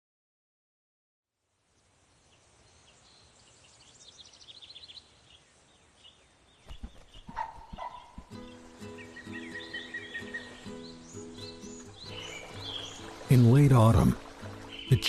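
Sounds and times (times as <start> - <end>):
small birds chirping: 1.8 - 15.0
low thumps: 6.7 - 8.5.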